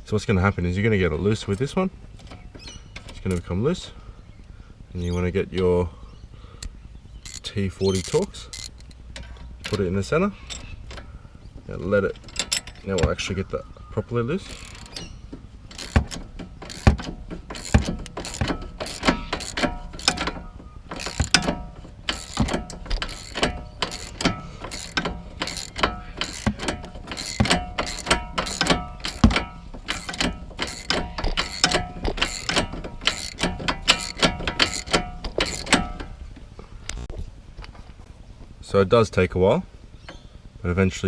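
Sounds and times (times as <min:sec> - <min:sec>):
socket ratchet clicking: 0:06.6 - 0:11.1, 0:12.0 - 0:13.3, 0:14.4 - 0:36.2.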